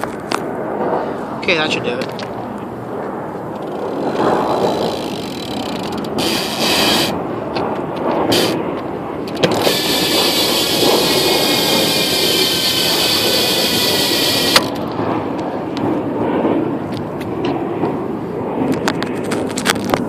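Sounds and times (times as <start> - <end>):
bicycle hub ratcheting buzz: 3.5 - 8.6, 9.2 - 14.9.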